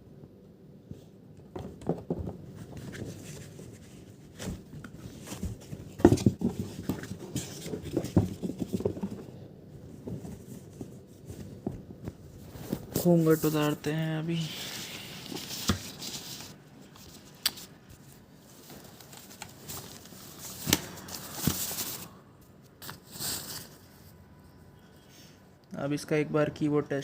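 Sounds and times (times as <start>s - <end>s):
hands tapping and knocking items: 1.4s - 3.1s
packaging rustling: 14.6s - 23.8s.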